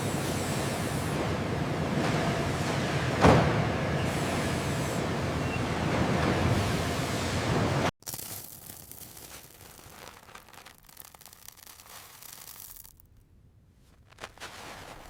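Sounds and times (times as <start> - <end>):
faint rustling and crackling: 13.7 - 15.0.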